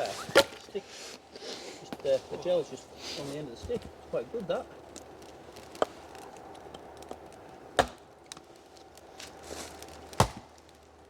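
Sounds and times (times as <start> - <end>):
axe chopping firewood: 5.7 - 8.5, 10.1 - 10.6.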